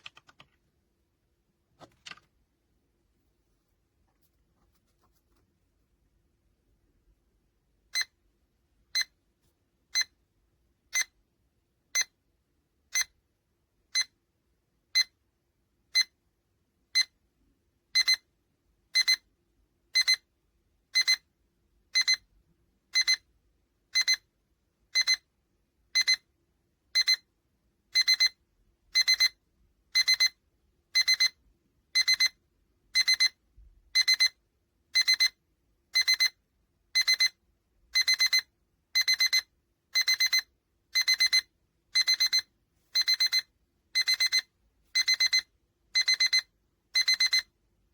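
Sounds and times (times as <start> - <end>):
alarm clock beeping: 18.0 - 18.2, 19.0 - 19.2, 20.0 - 20.2, 21.0 - 21.2, 22.0 - 22.2, 23.0 - 23.2, 24.0 - 24.3, 25.0 - 25.2, 26.0 - 26.2, 27.0 - 27.2, 28.0 - 28.4, 29.0 - 29.4, 30.0 - 30.4, 31.0 - 31.4, 32.0 - 32.4, 33.0 - 33.4, 34.0 - 34.4, 35.0 - 35.4, 36.0 - 36.4, 37.0 - 37.4, 38.0 - 47.5.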